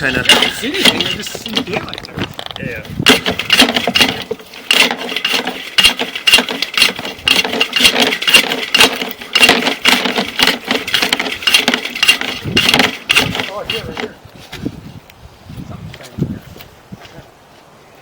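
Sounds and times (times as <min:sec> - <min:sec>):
cable reel rattling and clicking: 0:00.0 - 0:14.2.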